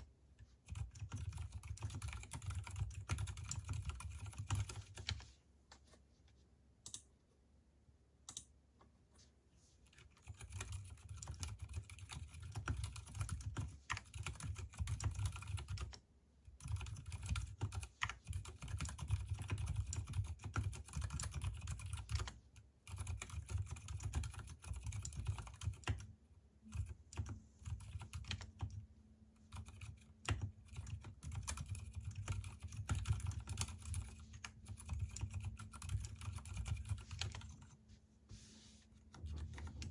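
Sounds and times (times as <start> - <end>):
muted keyboard typing: 0.0 - 5.3, 6.8 - 7.1, 8.3 - 8.5, 9.8 - 37.8, 39.1 - 39.9.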